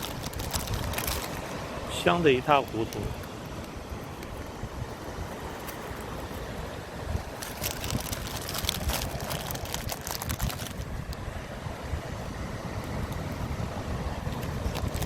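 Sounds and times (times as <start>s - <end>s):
crackly rustling: 0.0s - 1.6s, 5.5s - 6.4s, 7.3s - 11.2s, 14.3s - 15.0s
surf washing: 0.0s - 15.0s
wind buffeting microphone: 0.0s - 15.0s.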